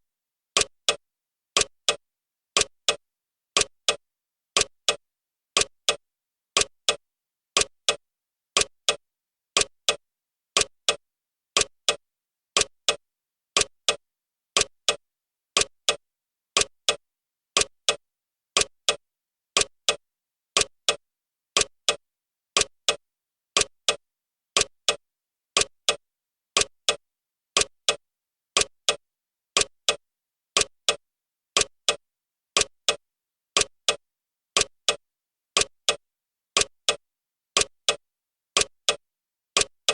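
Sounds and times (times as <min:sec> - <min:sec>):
clock ticking: 0:00.6 - 0:01.0, 0:01.6 - 0:02.0, 0:02.6 - 0:03.0, 0:03.6 - 0:04.0, 0:04.6 - 0:05.0, 0:05.6 - 0:06.0, 0:06.6 - 0:07.0, 0:07.6 - 0:08.0, 0:08.6 - 0:09.0, 0:09.6 - 0:10.0, 0:10.6 - 0:11.0, 0:11.6 - 0:12.0, 0:12.6 - 0:13.0, 0:13.6 - 0:14.0, 0:14.6 - 0:15.0, 0:15.6 - 0:16.0, 0:16.6 - 0:17.0, 0:17.6 - 0:18.0, 0:18.6 - 0:19.0, 0:19.6 - 0:20.0, 0:20.6 - 0:21.0, 0:21.6 - 0:22.0, 0:22.6 - 0:23.0, 0:23.6 - 0:24.0, 0:24.6 - 0:25.0, 0:25.6 - 0:26.0, 0:26.6 - 0:27.0, 0:27.6 - 0:28.0, 0:28.6 - 0:29.0, 0:29.6 - 0:30.0, 0:30.6 - 0:31.0, 0:31.6 - 0:32.0, 0:32.6 - 0:33.0, 0:33.6 - 0:34.0, 0:34.6 - 0:35.0, 0:35.6 - 0:36.0, 0:36.6 - 0:37.0, 0:37.6 - 0:38.0, 0:38.6 - 0:39.0, 0:39.6 - 0:39.9.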